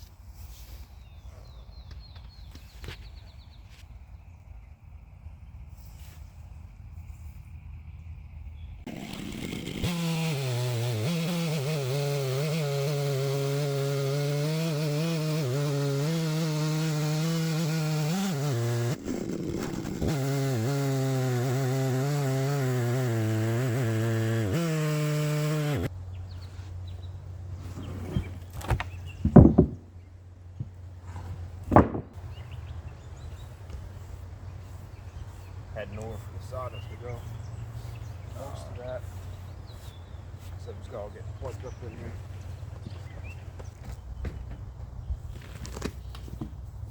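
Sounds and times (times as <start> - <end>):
chainsaw cutting through log: 8.9 - 25.9
sharp knocks: 29.2 - 29.9, 31.7 - 32.2.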